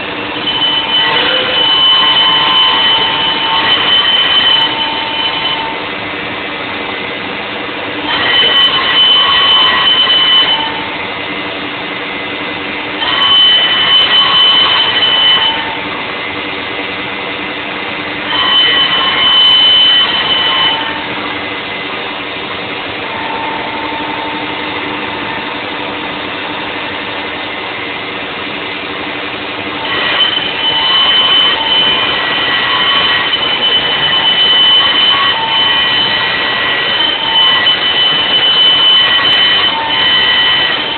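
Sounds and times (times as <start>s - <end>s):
router spindle whining: 0.0s - 6.0s, 8.0s - 11.0s, 13.0s - 16.0s, 18.2s - 27.4s, 29.8s - 40.9s.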